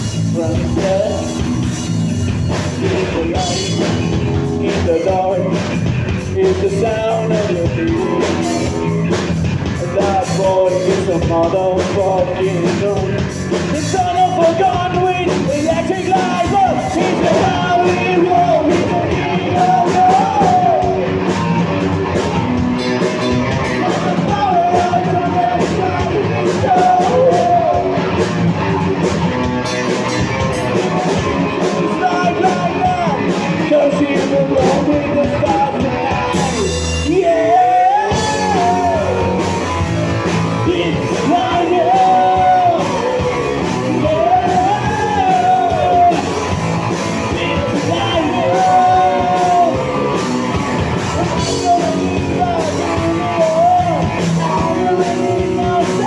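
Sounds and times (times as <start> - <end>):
rock band playing live: 0.0 - 56.0.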